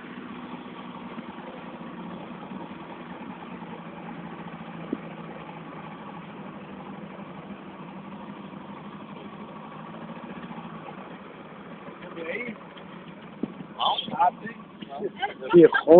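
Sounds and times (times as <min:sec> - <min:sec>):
engine running steadily: 0:00.0 - 0:15.9.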